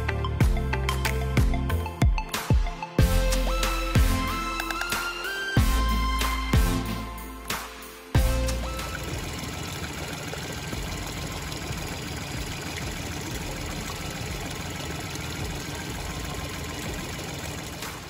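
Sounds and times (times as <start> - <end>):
outboard motor idling: 8.2 - 18.0.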